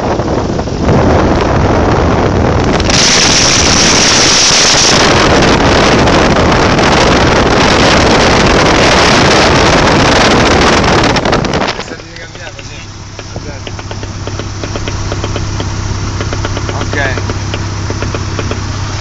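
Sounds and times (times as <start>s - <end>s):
light aircraft engine and propeller: 5.9s - 19.0s.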